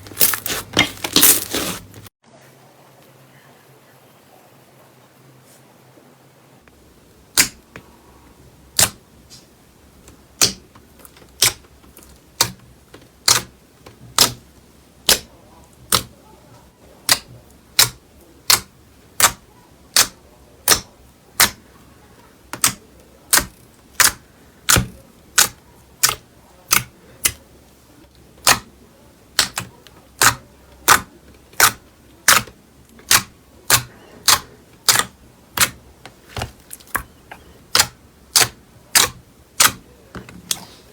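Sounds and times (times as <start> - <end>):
slime clicking pops: 37.7 - 39.8.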